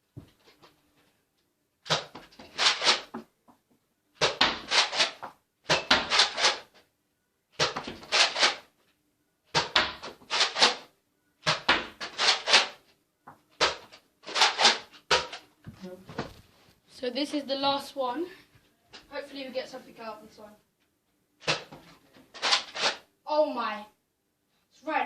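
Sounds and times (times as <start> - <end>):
toy blaster clacking and rattling: 2.6 - 3.1, 6.1 - 6.8, 8.1 - 8.7, 10.3 - 10.9, 12.0 - 12.8, 13.6 - 15.4, 22.4 - 23.1.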